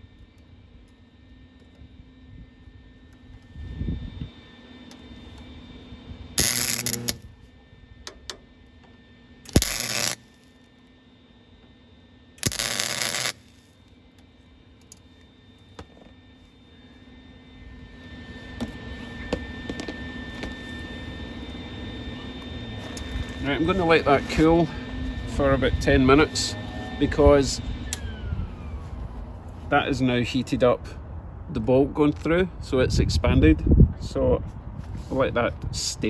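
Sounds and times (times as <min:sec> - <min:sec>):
crackling welding bursts: 0:06.4 - 0:07.2, 0:09.5 - 0:10.5, 0:12.4 - 0:13.7.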